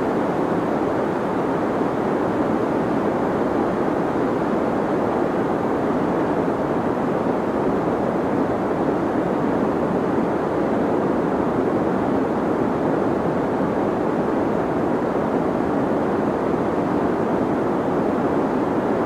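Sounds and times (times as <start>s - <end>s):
deep white noise hiss: 0.0s - 19.0s.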